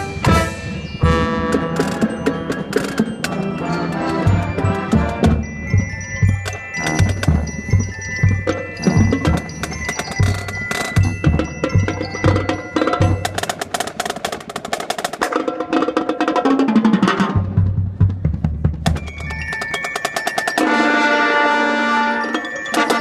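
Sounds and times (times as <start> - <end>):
ringing bell tones: 0.0 - 13.6, 18.9 - 23.0
marching band music: 0.0 - 23.0.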